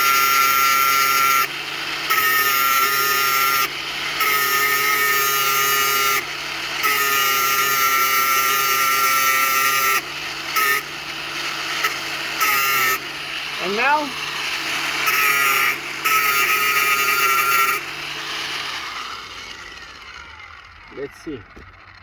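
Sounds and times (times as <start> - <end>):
power tool whining on metal: 0.0 - 22.0.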